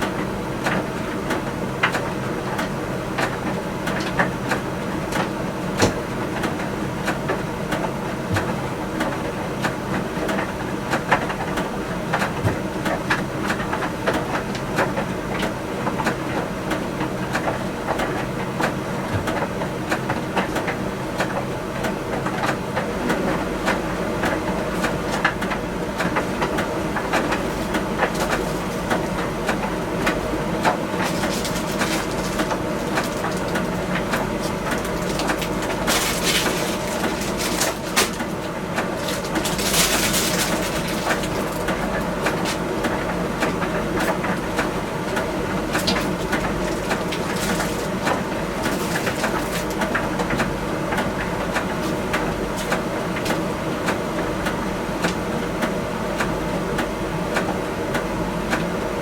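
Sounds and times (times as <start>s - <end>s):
tumble dryer humming: 22.6s - 57.9s.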